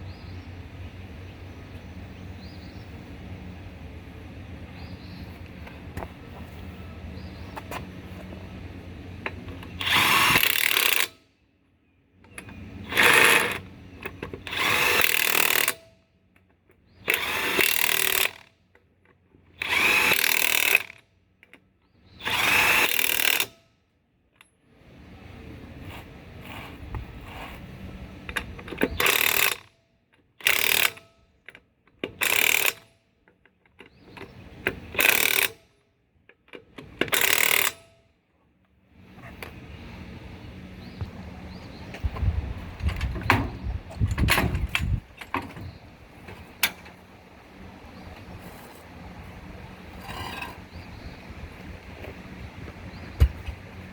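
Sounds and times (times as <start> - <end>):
power tool bursts: 9.8 - 11.2, 14.4 - 15.8, 17.0 - 18.5, 19.6 - 20.9, 22.2 - 23.5, 34.9 - 35.6.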